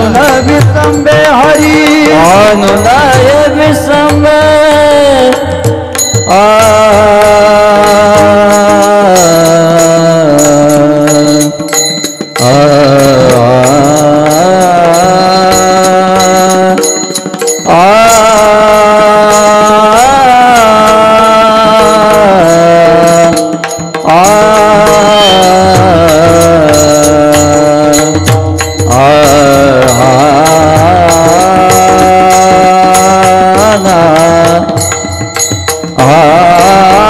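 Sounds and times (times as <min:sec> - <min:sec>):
percussion steady beat: 0:00.0 - 0:37.0
person singing long sliding notes: 0:12.4 - 0:28.3, 0:28.9 - 0:35.2, 0:35.9 - 0:37.0.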